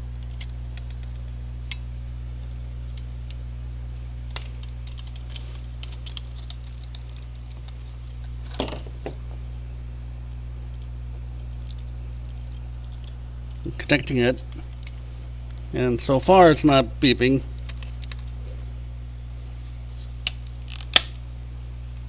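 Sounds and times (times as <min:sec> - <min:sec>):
steady low hum: 0:00.0 - 0:22.0
small plastic clicks: 0:00.2 - 0:01.8.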